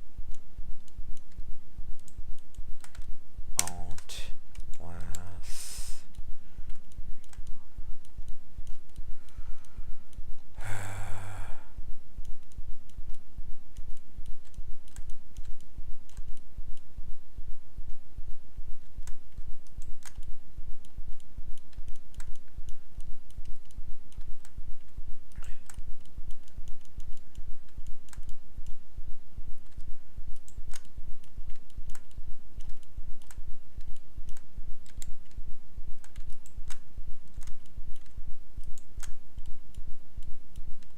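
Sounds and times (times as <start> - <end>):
low electrical hum: 0.0 - 40.9
keyboard and mouse clicks: 0.2 - 5.3, 6.0 - 11.5, 12.2 - 16.9, 18.3 - 28.8, 29.5 - 40.9
person sighing: 5.4 - 6.0, 10.6 - 11.8.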